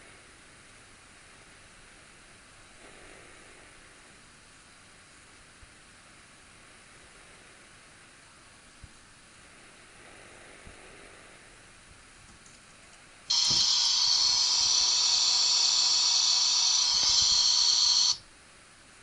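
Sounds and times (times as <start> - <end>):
buzzy high-pitched electronic sound: 13.3 - 18.2.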